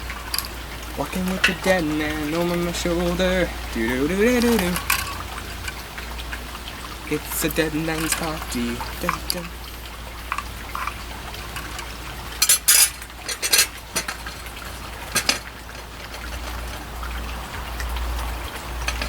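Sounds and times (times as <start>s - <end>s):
small hard objects clattering: 0.0s - 2.2s.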